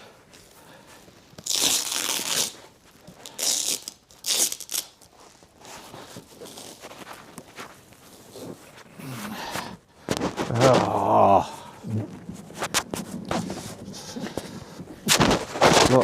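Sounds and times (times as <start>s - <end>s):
cloth rustling: 0.0s - 16.0s
fabric cover ripping swishes: 1.4s - 9.3s, 14.9s - 16.0s.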